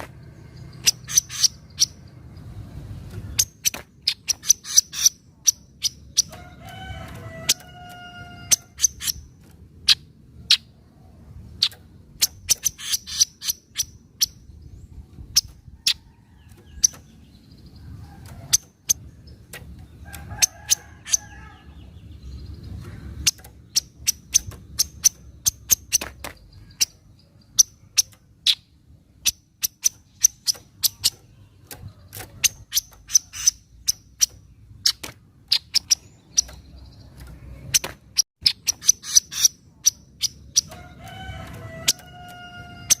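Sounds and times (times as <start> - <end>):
bird clicking chip calls: 0.0 - 2.0, 3.3 - 10.7, 11.6 - 14.4, 23.2 - 43.0.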